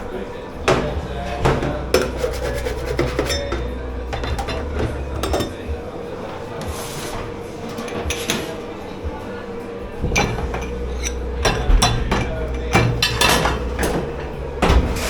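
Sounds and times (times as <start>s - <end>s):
steady kitchen hum: 0.0s - 15.0s
scrubbing dishes and pans: 0.7s - 5.6s, 10.0s - 15.0s
dishes knocking and clattering: 0.7s - 5.8s, 7.7s - 8.7s, 10.0s - 15.0s.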